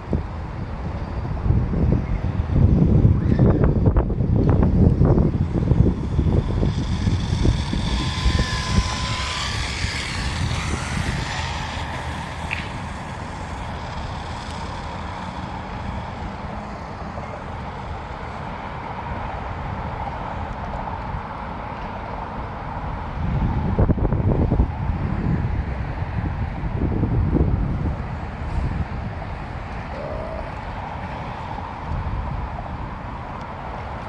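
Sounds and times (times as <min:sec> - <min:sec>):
wind buffeting on microphone: 0:00.0 - 0:34.0
electric motor whining: 0:03.7 - 0:18.4.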